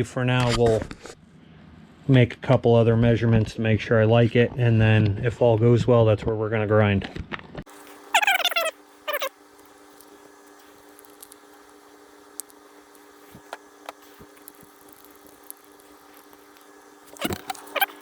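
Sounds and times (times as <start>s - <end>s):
steady hum: 7.7s - 18.0s.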